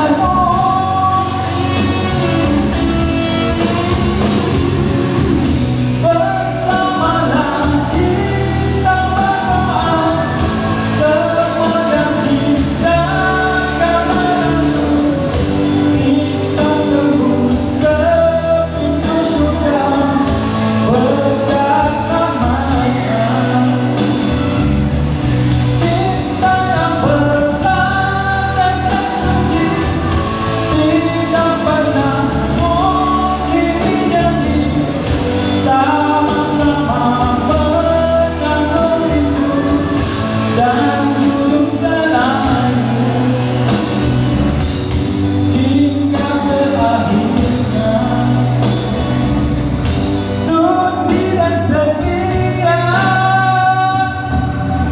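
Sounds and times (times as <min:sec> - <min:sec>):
pop music with singing: 0:00.0 - 0:54.9.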